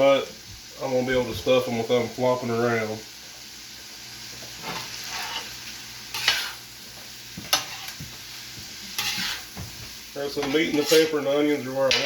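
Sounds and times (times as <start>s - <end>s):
food sizzling on a griddle: 0.0s - 12.0s
utensil scraping metal griddle: 4.6s - 6.7s, 7.4s - 8.0s, 8.9s - 9.6s, 10.2s - 12.0s.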